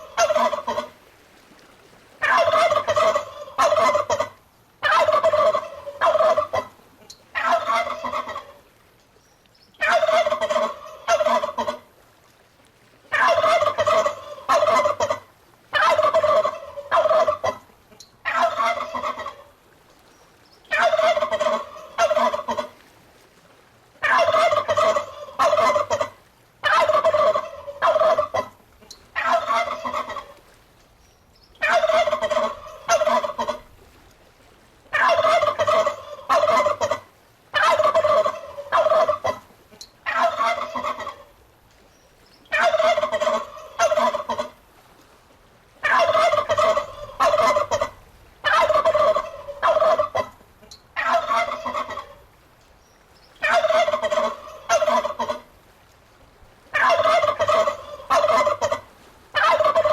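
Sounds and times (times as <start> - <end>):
turkey gobbling: 0.0 - 1.0, 2.2 - 8.6, 9.8 - 11.8, 13.1 - 19.5, 20.7 - 22.7, 24.0 - 30.4, 31.6 - 33.6, 34.9 - 41.3, 42.5 - 44.6, 45.8 - 52.2, 53.4 - 55.5, 56.7 - 59.9.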